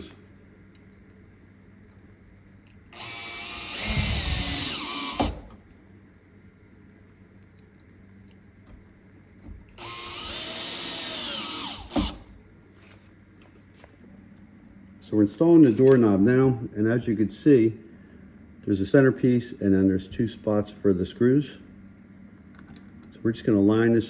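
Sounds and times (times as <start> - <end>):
drill click: 2.9 - 5.6, 9.8 - 12.3
power drill driving screws: 3.0 - 5.6, 9.8 - 12.4.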